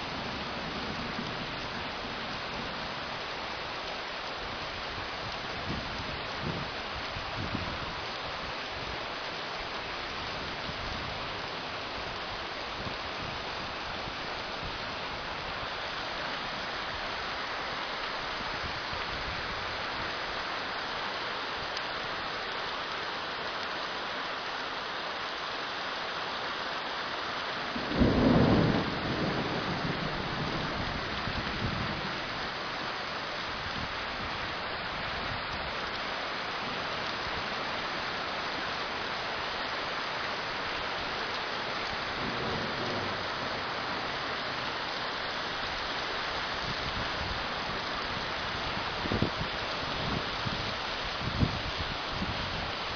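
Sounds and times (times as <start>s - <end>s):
steady rain: 0.0s - 52.9s
thunderclap rumbling: 27.7s - 32.7s, 41.8s - 44.6s.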